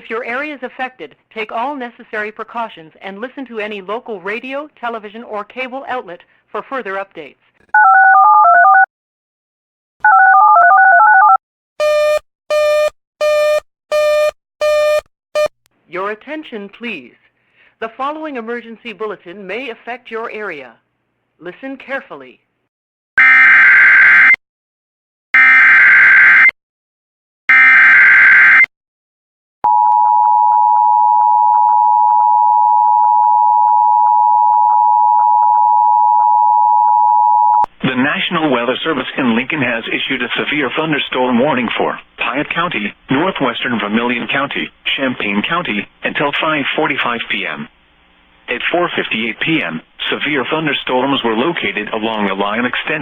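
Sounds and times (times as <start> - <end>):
two-tone attention signal: 11.1 - 15.5.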